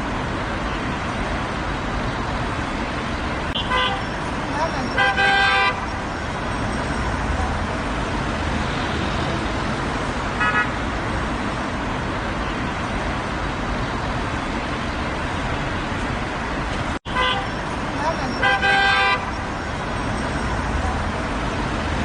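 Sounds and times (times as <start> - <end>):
road traffic noise: 0.0 - 22.0
car horn toot: 3.6 - 4.1, 4.8 - 5.9, 10.4 - 10.8, 17.1 - 17.6, 18.3 - 19.4.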